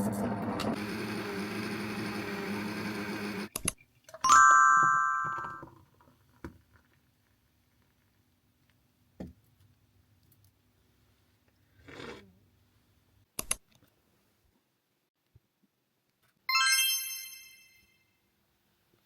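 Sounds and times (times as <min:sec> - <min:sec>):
bright bell ding: 0:04.3 - 0:05.6, 0:16.5 - 0:18.0
click: 0:13.4 - 0:13.9.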